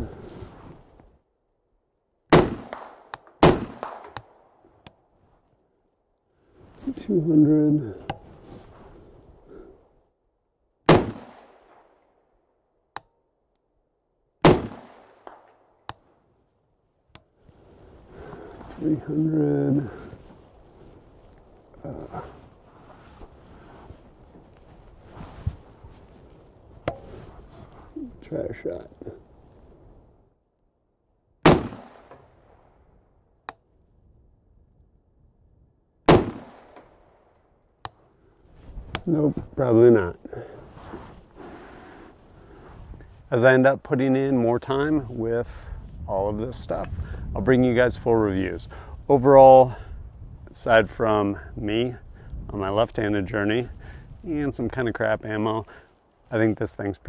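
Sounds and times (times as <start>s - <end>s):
gunshots: 2.3s - 4.2s, 10.9s - 11.9s, 14.4s - 15.6s, 31.4s - 32.2s, 36.1s - 37.0s
suppressed rifle shots: 2.3s - 4.5s, 10.9s - 12.1s, 14.4s - 15.6s, 31.4s - 32.6s, 36.1s - 37.2s.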